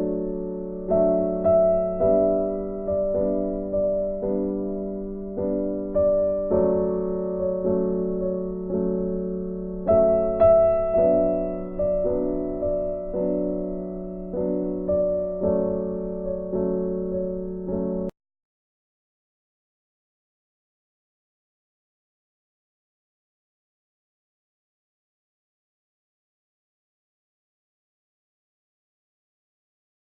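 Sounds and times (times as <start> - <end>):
slow keyboard chords: 0.0 - 18.1.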